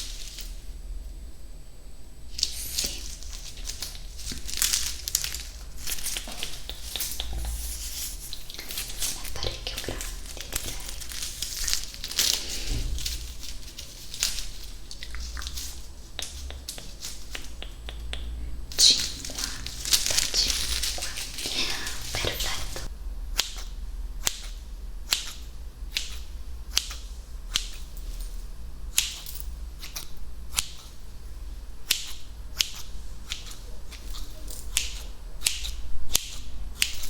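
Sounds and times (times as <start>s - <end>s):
wet mouth clicks: 6.2s - 10.8s, 15.0s - 19.6s.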